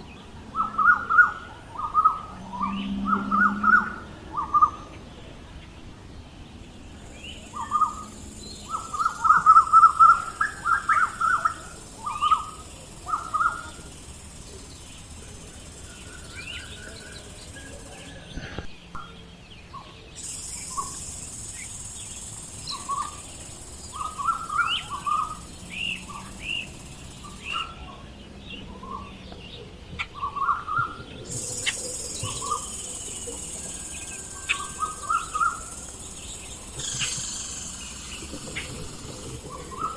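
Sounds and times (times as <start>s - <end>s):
birds chirping: 0.0s - 39.9s
steady high buzz: 6.7s - 18.3s, 20.2s - 27.9s, 31.2s - 39.9s.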